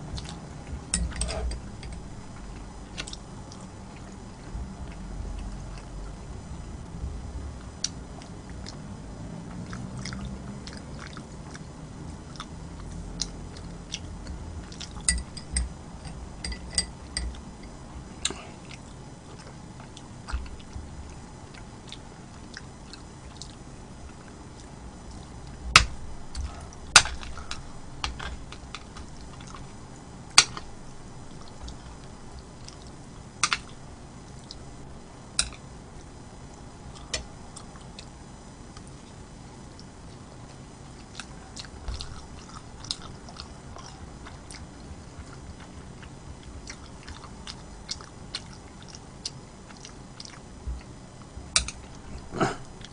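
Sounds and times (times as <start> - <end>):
person chewing and biting: 41.0 - 50.9.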